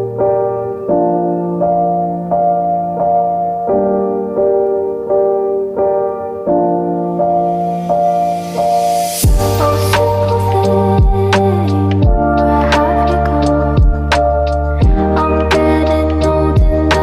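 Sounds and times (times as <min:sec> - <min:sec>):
piano-like keyboard chords: 0:00.0 - 0:17.0.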